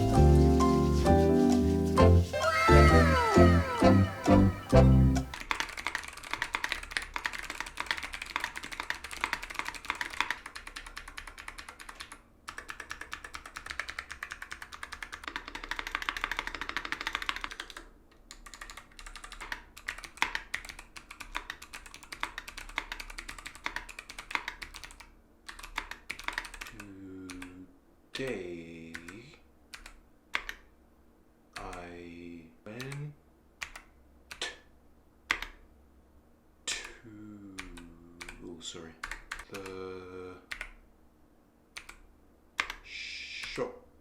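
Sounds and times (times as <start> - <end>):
mechanical keyboard typing: 4.6 - 27.5, 28.9 - 30.6, 33.6 - 34.6, 39.0 - 39.8, 40.5 - 40.8, 41.8 - 42.0, 42.6 - 42.8.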